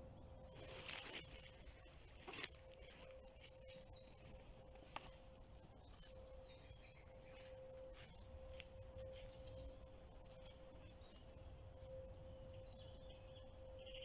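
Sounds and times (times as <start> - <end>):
faint steady hum: 0.0 - 14.0
faint rustling: 0.5 - 6.5.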